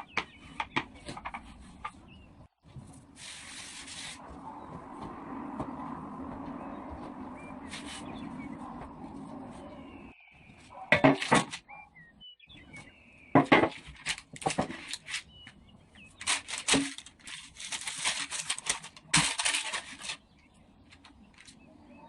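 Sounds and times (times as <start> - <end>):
rustling and clattering objects: 6.4 - 11.6, 12.8 - 21.7.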